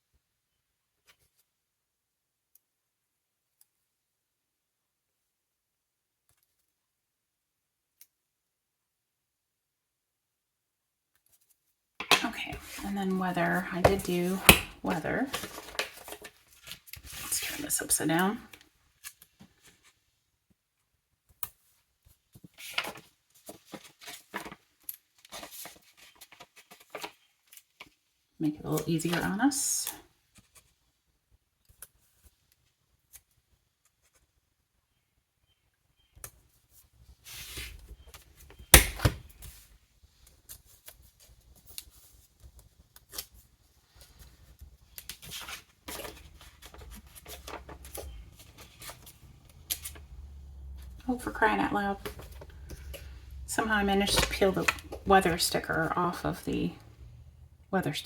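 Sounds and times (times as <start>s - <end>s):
paper rustling: 12.5s - 17.8s, 22.3s - 28.0s, 39.2s - 51.3s.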